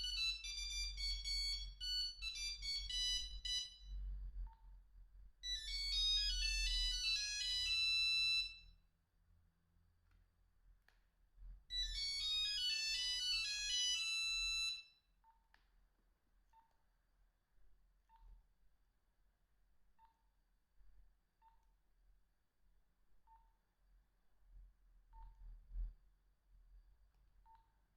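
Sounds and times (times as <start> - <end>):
monophonic phone ringtone: 0.0 - 3.9, 5.4 - 8.7, 11.7 - 14.9.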